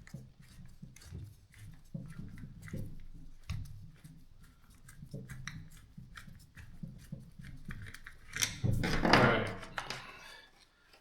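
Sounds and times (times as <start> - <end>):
small clicks and scrapes of parts: 4.8 - 9.0.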